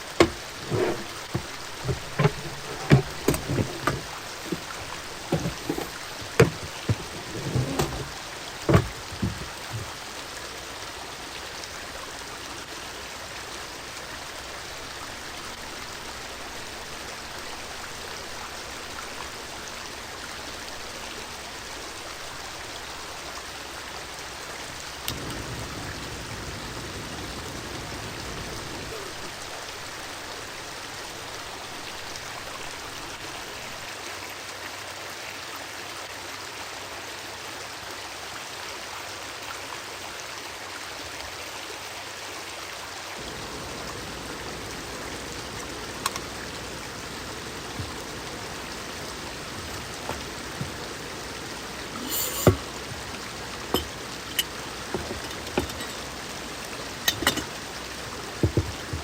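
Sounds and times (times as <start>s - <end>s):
sharp knocks and thumps: 0.0s - 10.0s, 47.6s - 56.3s, 57.0s - 57.6s, 58.4s - 59.0s
steady rushing hiss: 0.0s - 11.5s, 24.3s - 33.8s, 43.2s - 59.0s.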